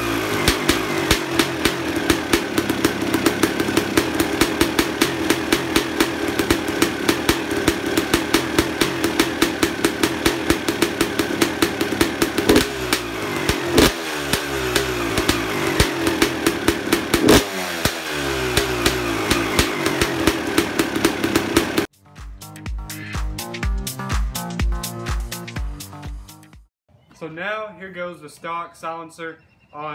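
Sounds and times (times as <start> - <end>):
dirt bike engine idling and revving: 0.0 - 21.9.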